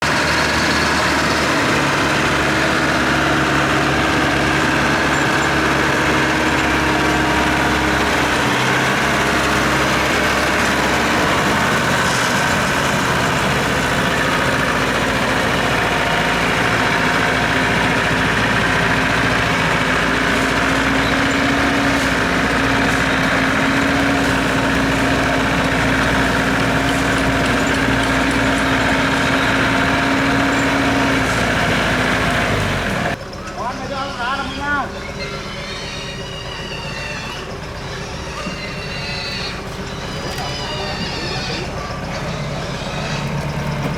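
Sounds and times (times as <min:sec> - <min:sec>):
heavy construction vehicle engine: 0:00.0 - 0:43.9.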